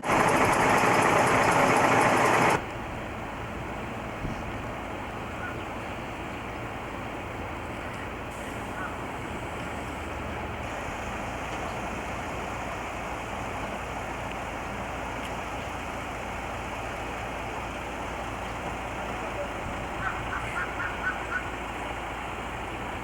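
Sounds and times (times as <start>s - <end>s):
train rumbling on board: 0.0s - 4.8s.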